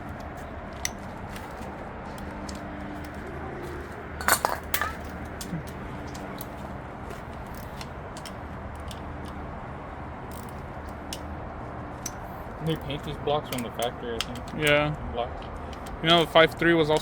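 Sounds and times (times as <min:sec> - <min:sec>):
metallic clinks of tools: 0:04.2 - 0:05.8.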